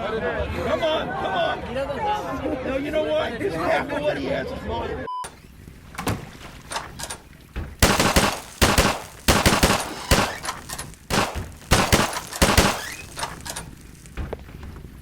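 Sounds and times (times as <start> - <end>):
loud sharp bangs: 7.6 - 14.3.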